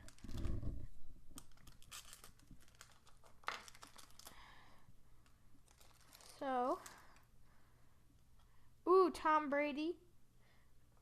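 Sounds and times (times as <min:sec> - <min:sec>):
wrapper ripping: 0:00.0 - 0:04.5, 0:05.6 - 0:07.2
card pack wrapper crinkling: 0:00.0 - 0:04.6, 0:05.2 - 0:07.2.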